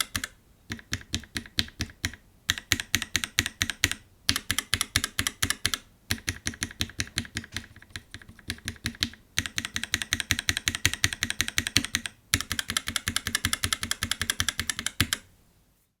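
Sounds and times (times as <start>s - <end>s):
mechanical keyboard typing: 0.0s - 15.3s.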